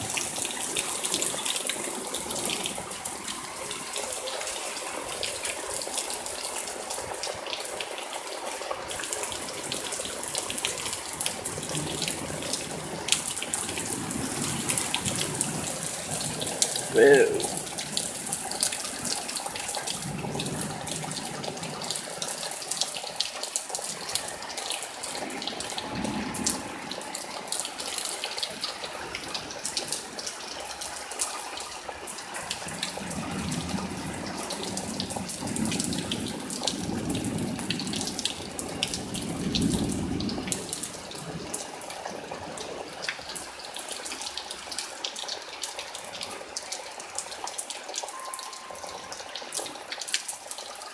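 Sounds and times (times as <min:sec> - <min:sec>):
heavy rain pouring: 0:00.0 - 0:50.9
rain drops ticking: 0:00.0 - 0:50.9
thunder rumbling: 0:25.2 - 0:27.8.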